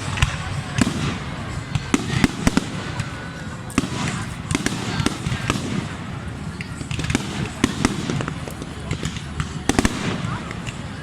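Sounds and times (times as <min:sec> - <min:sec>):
fireworks bangs and pops: 0:00.0 - 0:11.0
fireworks crackling: 0:00.0 - 0:11.0.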